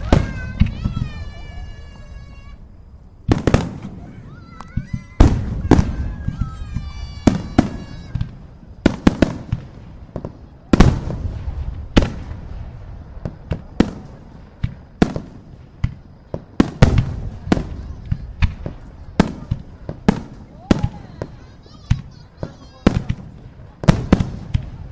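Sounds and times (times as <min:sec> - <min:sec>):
fireworks banging: 0:00.0 - 0:24.9.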